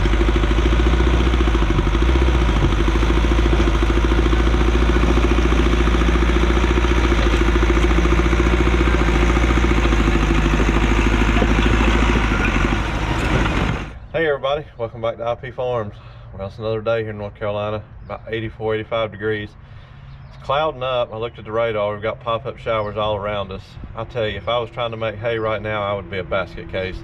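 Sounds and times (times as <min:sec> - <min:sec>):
track loader engine running: 0:00.0 - 0:14.6.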